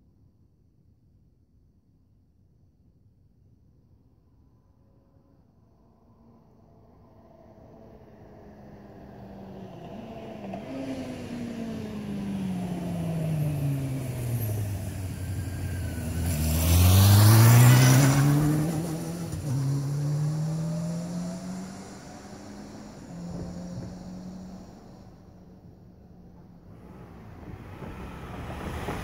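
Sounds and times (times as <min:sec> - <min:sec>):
vehicle engine passing by: 0:07.7 - 0:29.0.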